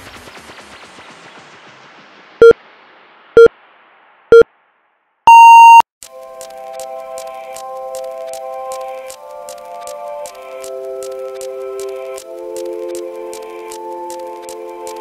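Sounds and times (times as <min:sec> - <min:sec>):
long high beep: 0:05.3 - 0:05.8
short low beeps: 0:05.3 - 0:05.8
background music: 0:06.1 - 0:15.0.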